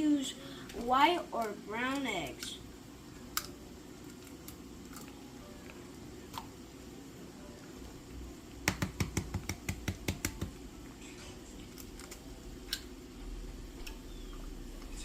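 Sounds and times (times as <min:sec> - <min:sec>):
egg tapping against bowl edge: 0:08.6 - 0:10.6.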